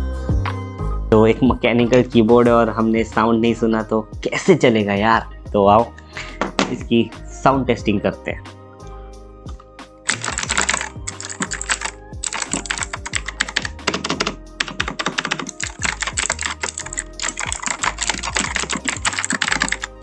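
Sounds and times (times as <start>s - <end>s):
mechanical keyboard typing: 10.1s - 20.0s.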